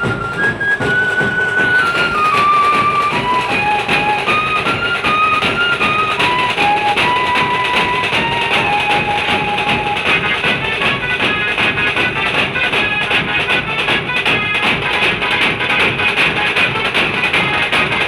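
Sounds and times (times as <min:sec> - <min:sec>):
electronic keyboard melody: 0:00.0 - 0:12.0
fast busy drumming: 0:00.0 - 0:18.0.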